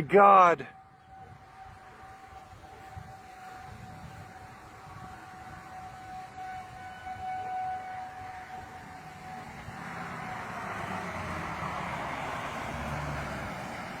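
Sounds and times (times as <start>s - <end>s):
warning siren steady tone: 0.0s - 14.0s
wind roaring with low rumbling: 0.7s - 14.0s.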